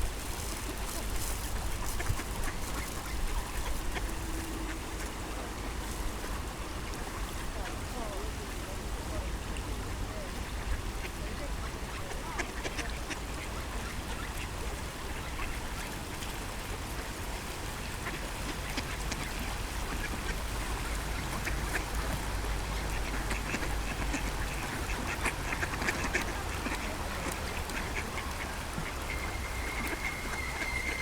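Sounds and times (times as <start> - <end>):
ducks quacking: 0.9 - 6.5, 10.6 - 16.2, 17.9 - 31.0
river water rushing: 15.9 - 31.0.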